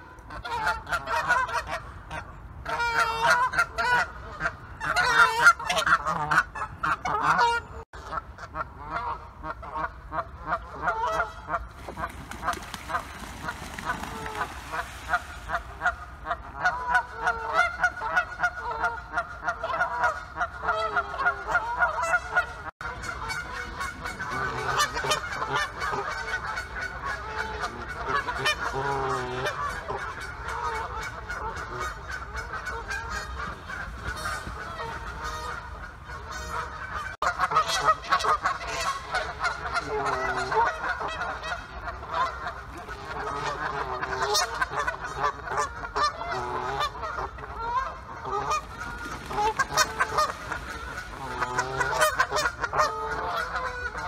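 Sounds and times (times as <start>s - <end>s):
geese honking: 0.0s - 54.0s.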